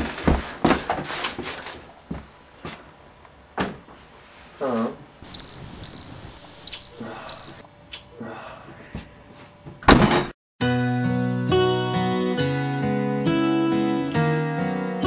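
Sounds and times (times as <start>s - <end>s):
short high-pitched chirps: 5.3s - 7.6s.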